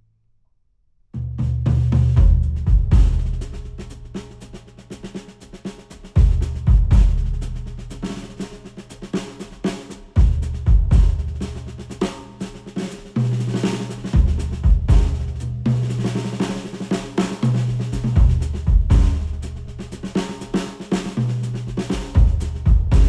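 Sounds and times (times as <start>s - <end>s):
instrumental music with drum kit: 1.2s - 23.0s
kick drum hits: 2.2s - 3.4s, 6.2s - 7.3s, 10.2s - 11.3s, 14.2s - 15.2s, 18.2s - 19.4s, 22.0s - 23.0s
sustained bass line: 22.2s - 23.0s.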